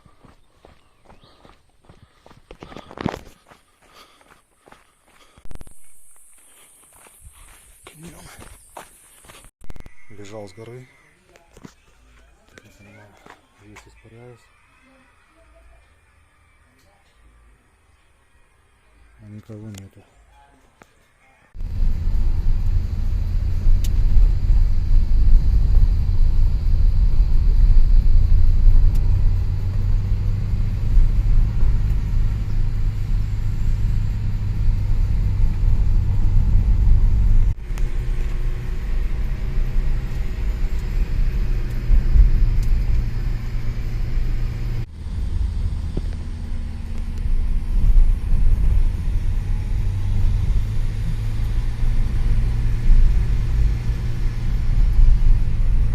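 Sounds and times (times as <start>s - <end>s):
road vehicle rumbling: 21.5s - 55.9s.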